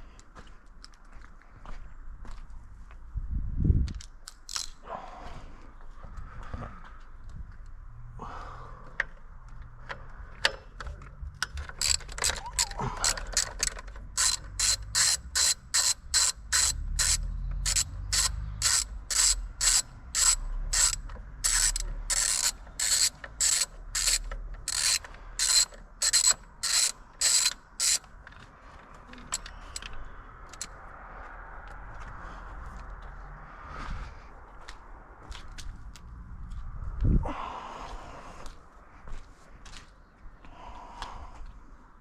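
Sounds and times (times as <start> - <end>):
socket ratchet clicking: 4.3 - 4.8, 10.5 - 28.2, 29.2 - 29.9, 30.5 - 30.7.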